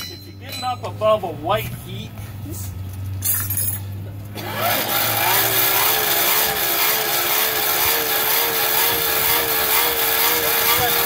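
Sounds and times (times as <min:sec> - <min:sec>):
forge air blower running: 0:04.4 - 0:11.0.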